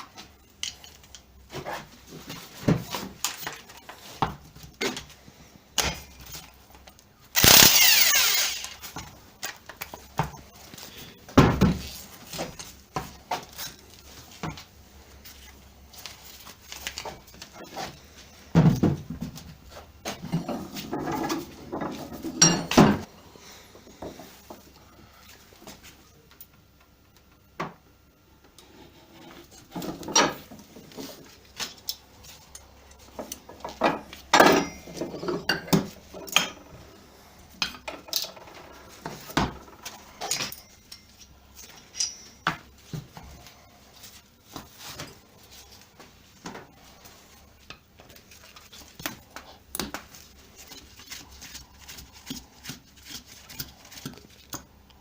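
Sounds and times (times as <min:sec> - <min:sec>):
metal tools clinking on workbench: 0:22.4 - 0:22.9, 0:40.2 - 0:42.6.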